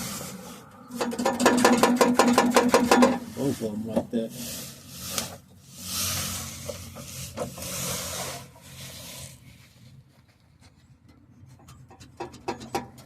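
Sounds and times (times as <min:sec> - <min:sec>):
loose metal part scraping rattle: 0:00.0 - 0:09.3.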